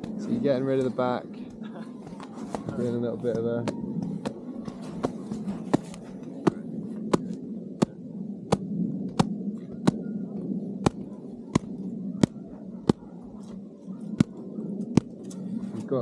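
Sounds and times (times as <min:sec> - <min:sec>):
steady low rumble: 0:00.0 - 0:16.0.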